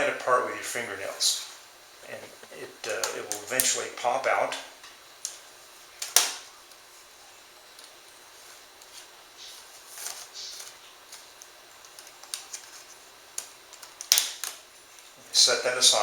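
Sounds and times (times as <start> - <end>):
plastic scraping and rustling: 7.8 - 15.2
plastic clips clicking: 13.3 - 14.6.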